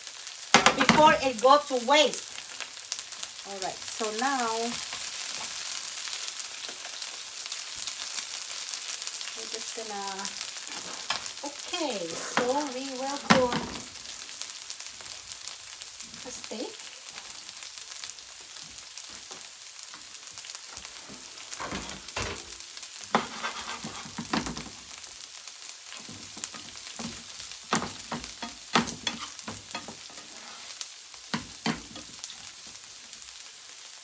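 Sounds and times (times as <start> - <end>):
meat sizzling in a frying pan: 0.0 - 34.0
spatula scraping a pan: 10.5 - 14.3, 20.8 - 25.0, 25.9 - 32.8.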